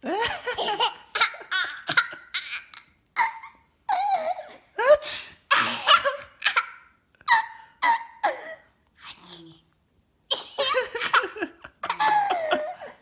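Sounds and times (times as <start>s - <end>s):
baby laughing: 0.2s - 4.6s, 10.6s - 12.9s.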